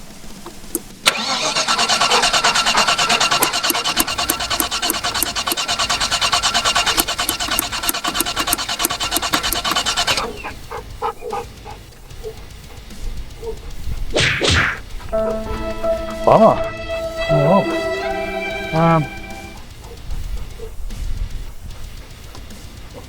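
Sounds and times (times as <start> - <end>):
starter motor cranking engine: 0.0 - 10.7
starter click: 0.4 - 10.4.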